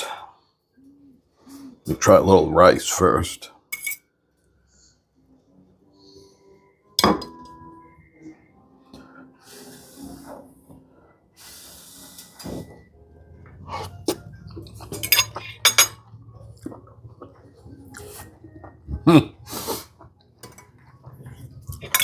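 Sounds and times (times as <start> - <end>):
fork clinking on plate: 14.9 - 16.0.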